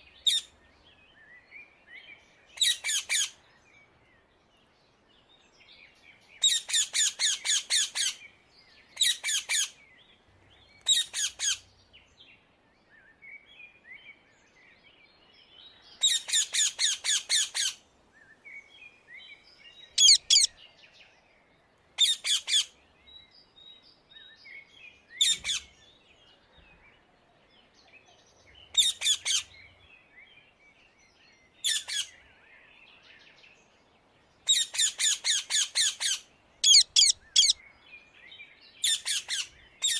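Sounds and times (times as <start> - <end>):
parakeets screeching: 20.0 - 20.5, 35.5 - 37.6
soft bird chattering: 20.0 - 20.6, 34.5 - 37.6.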